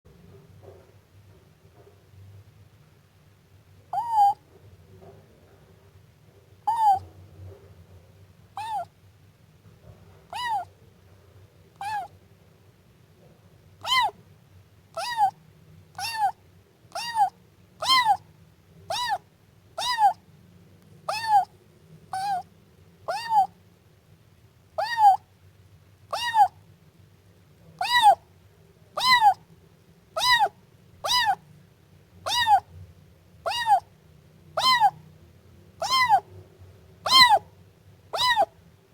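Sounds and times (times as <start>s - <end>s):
kitten meowing: 3.9s - 4.4s, 6.7s - 7.0s, 8.6s - 8.9s, 10.3s - 10.7s, 11.8s - 12.1s, 13.8s - 14.2s, 15.0s - 15.4s, 16.0s - 18.2s, 18.9s - 19.2s, 19.8s - 20.2s, 21.1s - 21.5s, 22.1s - 22.5s, 23.1s - 23.6s, 24.8s - 25.3s, 26.1s - 26.6s, 27.8s - 28.2s, 29.0s - 29.4s, 30.2s - 31.4s, 32.3s - 32.6s, 33.5s - 33.9s, 34.6s - 35.0s, 35.8s - 36.2s, 37.1s - 37.4s, 38.2s - 38.5s.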